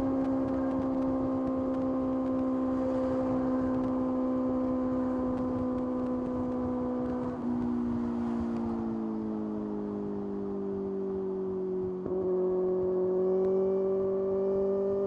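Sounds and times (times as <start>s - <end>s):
wind noise: 0.0s - 10.9s.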